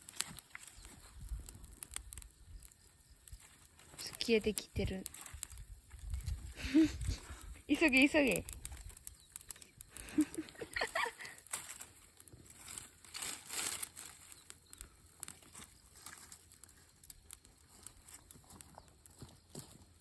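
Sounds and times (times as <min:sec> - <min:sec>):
rustling: 0:00.0 - 0:20.0
sharp clicks and cracks: 0:00.0 - 0:20.0
wood bonfire crackling: 0:00.0 - 0:20.0.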